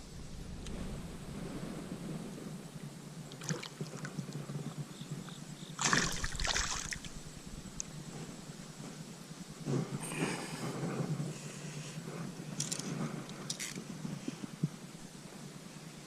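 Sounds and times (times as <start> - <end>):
water sloshing and splashing: 3.3 - 4.2, 5.8 - 7.2
loud water splash: 5.8 - 7.1.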